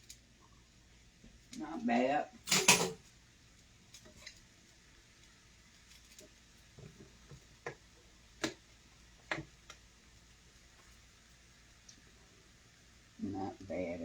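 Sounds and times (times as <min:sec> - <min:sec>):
faint clicks and taps: 0:05.2 - 0:08.6, 0:09.2 - 0:09.9.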